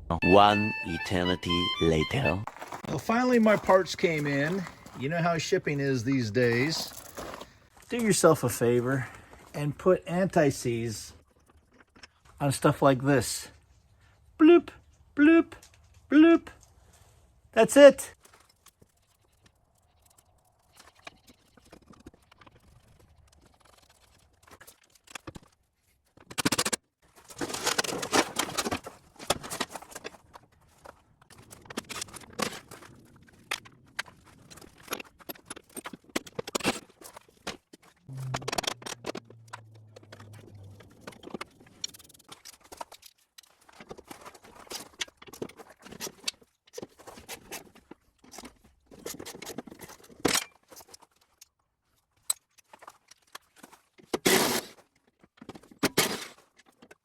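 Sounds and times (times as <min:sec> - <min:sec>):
short low hum: 0:38.0 - 0:41.2.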